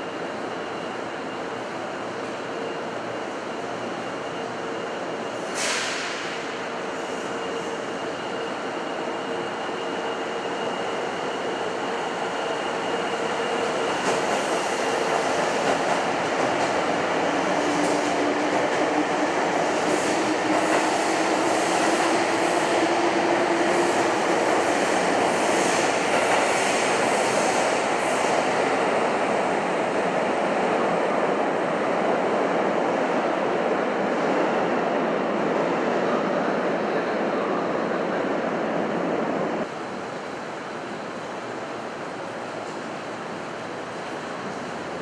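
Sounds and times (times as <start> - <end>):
train running noise: 0.0 - 32.4.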